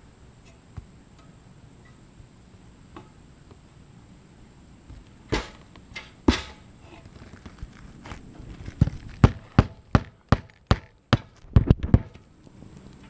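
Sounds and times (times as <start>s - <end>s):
hammer striking a nail: 9.2s - 12.2s.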